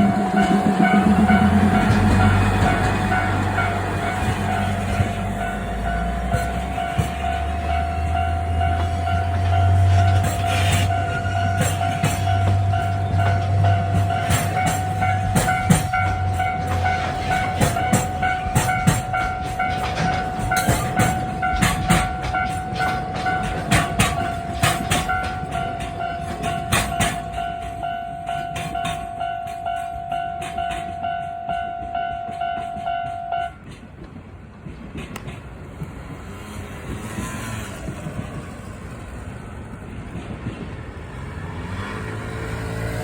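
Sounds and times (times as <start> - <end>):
steady high tone: 0.0 - 33.6
train clicking over rails: 0.0 - 43.0.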